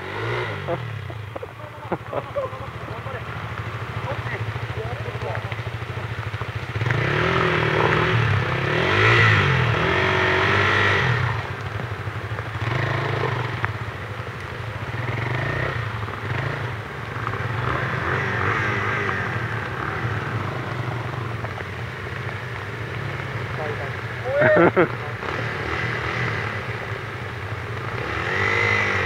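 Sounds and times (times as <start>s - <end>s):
motorcycle engine revving: 0.0s - 29.0s.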